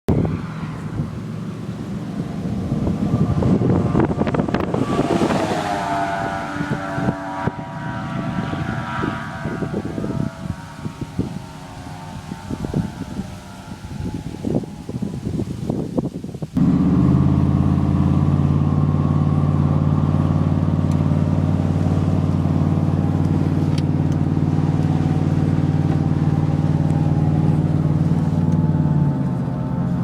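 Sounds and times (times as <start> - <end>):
truck tires droning: 0.1 - 30.0.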